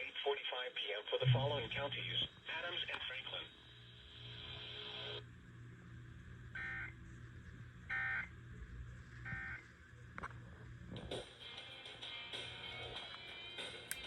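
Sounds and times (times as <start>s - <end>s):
warbling digital data tones: 1.2s - 1.9s.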